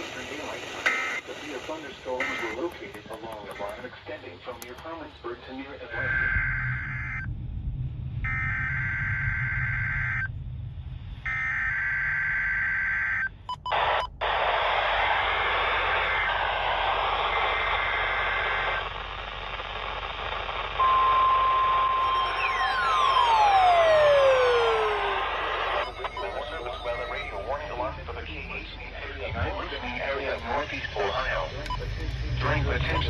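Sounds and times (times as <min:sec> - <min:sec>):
radio static hiss: 0:00.0 - 0:06.9, 0:13.7 - 0:33.0
screeching two-tone data bursts: 0:06.0 - 0:07.3, 0:20.8 - 0:27.8
steady single-pitch alarm tone: 0:06.0 - 0:07.3, 0:08.2 - 0:10.3, 0:11.2 - 0:13.7, 0:20.8 - 0:27.6.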